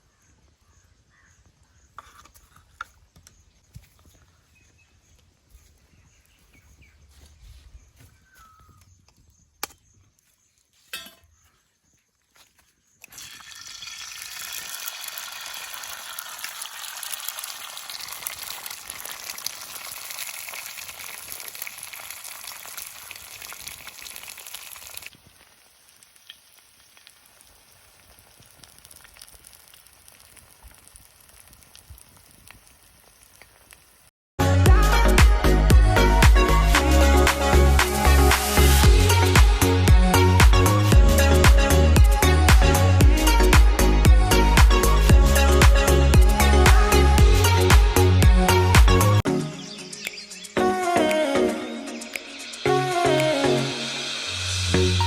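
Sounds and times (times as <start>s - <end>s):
egg sizzling in pan: 13.1s - 34.1s.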